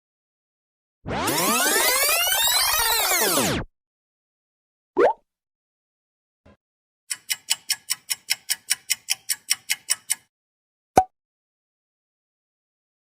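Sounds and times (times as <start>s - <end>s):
clock ticking: 7.1s - 10.3s.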